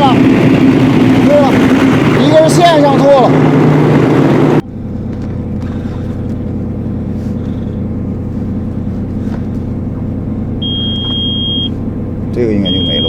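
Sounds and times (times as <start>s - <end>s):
diesel engine idling: 0.0s - 13.0s.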